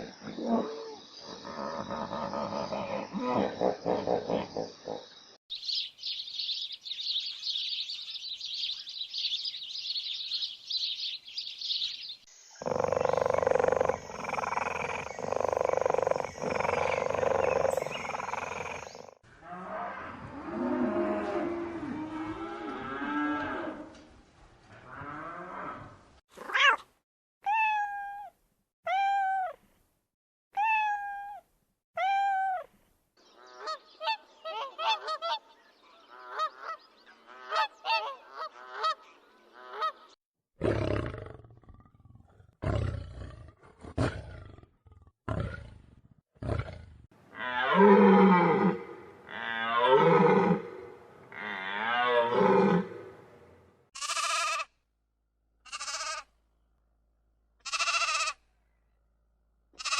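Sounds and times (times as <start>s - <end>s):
long loud animal calls: 12.6s - 19.1s, 55.7s - 56.3s, 57.7s - 58.4s
low gruff animal calls: 12.6s - 19.2s.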